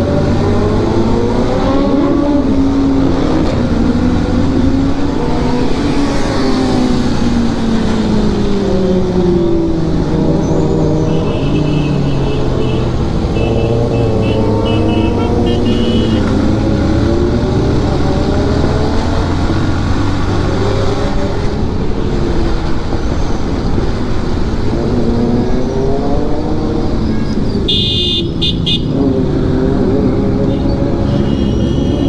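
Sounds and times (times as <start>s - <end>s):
motorcycle engine revving: 0.0s - 22.9s
road noise: 0.0s - 32.0s
vehicle horns honking: 11.0s - 16.7s, 27.6s - 29.0s, 30.4s - 32.0s.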